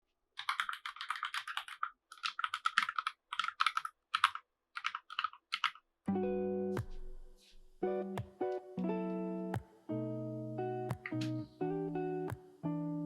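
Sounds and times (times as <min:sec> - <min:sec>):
mechanical keyboard typing: 0:00.4 - 0:05.8.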